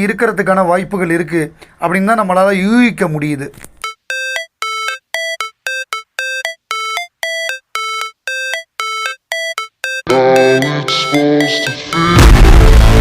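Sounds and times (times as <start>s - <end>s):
beeping synthesizer melody: 3.8s - 12.6s
fuller music track: 9.9s - 13.0s.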